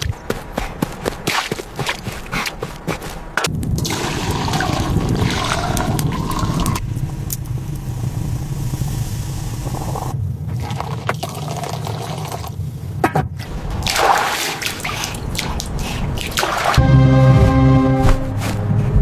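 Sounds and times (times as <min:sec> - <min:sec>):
water running and splashing: 0:00.0 - 0:06.8, 0:13.5 - 0:16.8.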